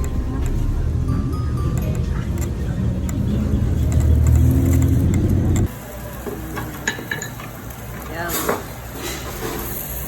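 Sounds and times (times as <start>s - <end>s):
vehicle engine rumble: 0.0s - 5.8s.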